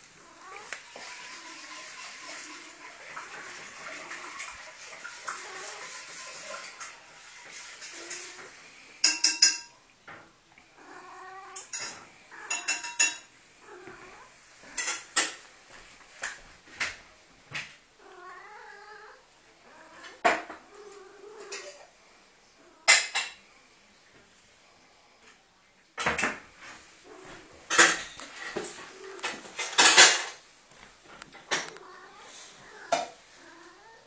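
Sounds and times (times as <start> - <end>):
loud sharp clatters and knocks: 27.7 - 30.4.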